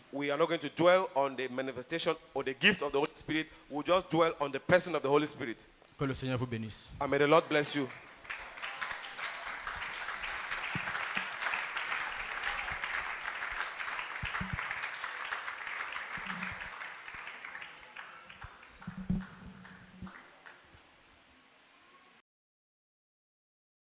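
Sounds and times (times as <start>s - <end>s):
congregation clapping: 7.5s - 20.9s.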